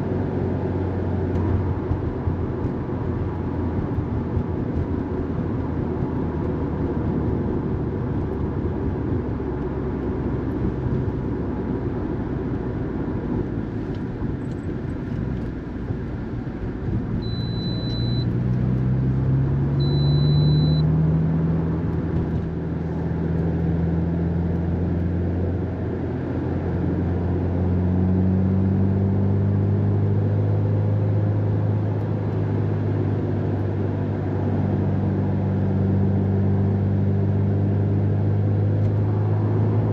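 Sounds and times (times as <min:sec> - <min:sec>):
car engine accelerating: 0:00.0 - 0:39.9
road noise inside car: 0:00.0 - 0:39.9
short high beeps: 0:17.2 - 0:18.3, 0:19.8 - 0:20.8.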